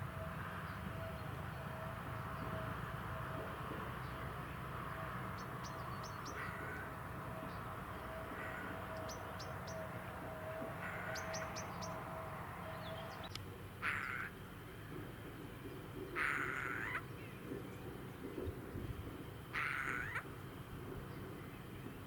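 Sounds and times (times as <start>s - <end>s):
steady background hum: 0.0s - 22.0s
birds chirping: 4.0s - 14.3s.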